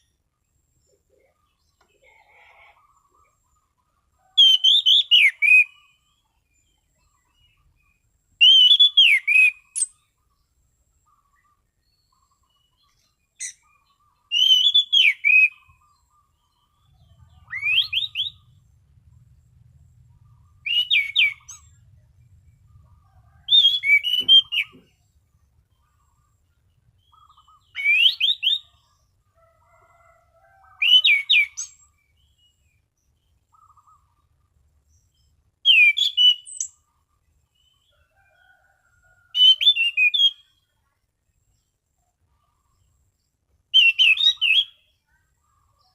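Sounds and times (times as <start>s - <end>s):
thrush singing whistled phrases: 8.4s - 10.0s, 14.3s - 15.8s, 17.3s - 18.5s, 20.6s - 21.7s, 23.5s - 24.8s, 27.2s - 28.8s, 35.6s - 36.7s, 39.4s - 40.5s, 43.7s - 44.8s.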